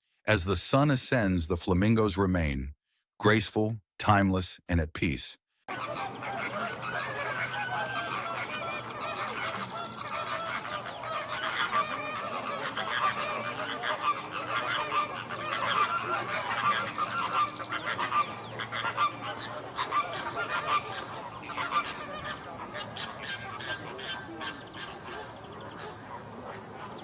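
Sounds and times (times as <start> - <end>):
flock of flamingos calling: 5.7 - 27.0.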